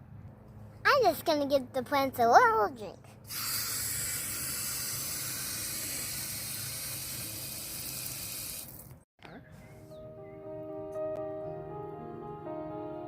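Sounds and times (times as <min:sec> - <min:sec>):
soft music: 0:09.5 - 0:13.0.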